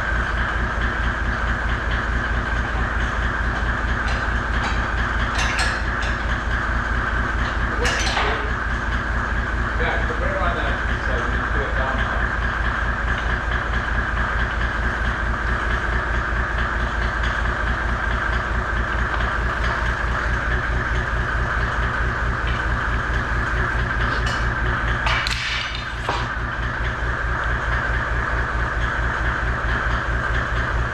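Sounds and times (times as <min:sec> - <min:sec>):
engine idling: 0:00.0 - 0:30.9.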